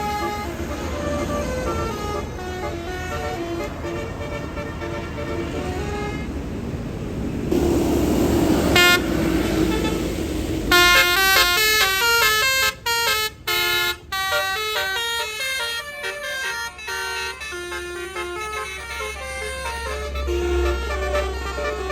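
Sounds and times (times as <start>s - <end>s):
musical air horn tune: 0.0s - 6.3s, 8.3s - 21.9s
vehicle rumble: 0.0s - 21.9s
short horn toot: 8.7s - 21.9s.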